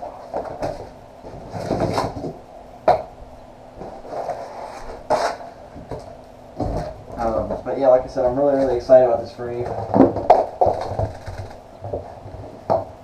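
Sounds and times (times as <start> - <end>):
papers and packaging rustling: 3.8 - 12.6.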